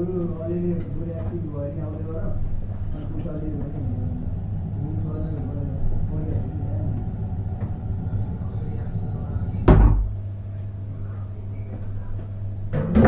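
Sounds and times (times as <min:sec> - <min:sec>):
steady low hum: 0:00.0 - 0:13.0
sharp knock: 0:09.7 - 0:10.2.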